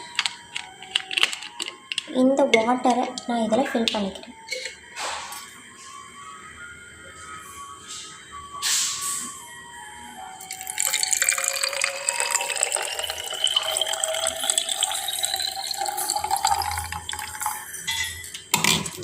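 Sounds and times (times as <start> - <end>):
water pouring into spray bottle: 10.5 - 17.6.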